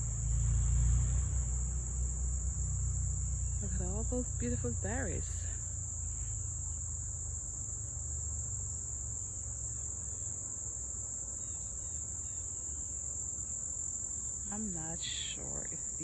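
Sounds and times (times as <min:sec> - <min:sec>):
low rumble: 0:00.0 - 0:06.1
insects stridulating: 0:00.0 - 0:16.0.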